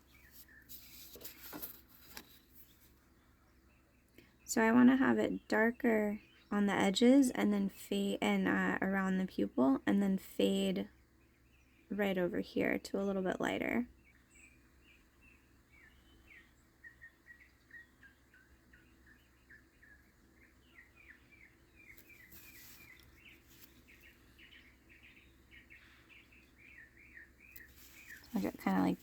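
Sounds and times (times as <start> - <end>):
birds chirping: 0.0 - 29.0.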